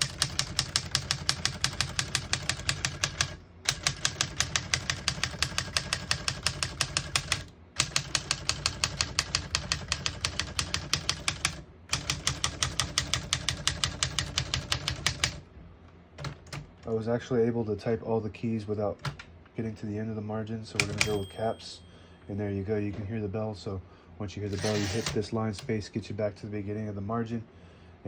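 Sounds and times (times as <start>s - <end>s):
manual typewriter typing: 0.0s - 15.4s, 16.2s - 16.7s, 20.8s - 21.4s, 24.5s - 25.8s.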